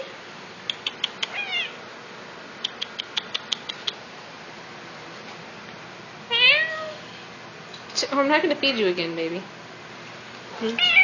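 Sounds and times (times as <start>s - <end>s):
cat chirping: 0.7s - 1.8s, 6.3s - 7.0s, 10.8s - 11.0s
cat meowing: 1.2s - 1.8s, 6.3s - 7.0s, 10.8s - 11.0s.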